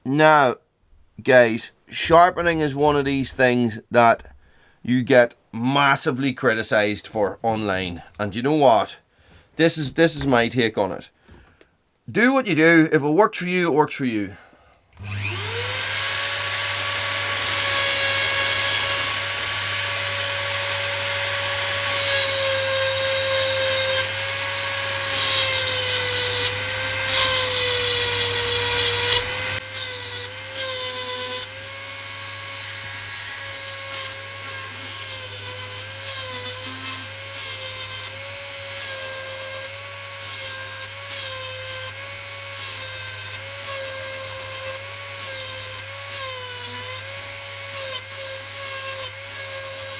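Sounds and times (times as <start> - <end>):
rotary tool whining: 15.0 - 49.9.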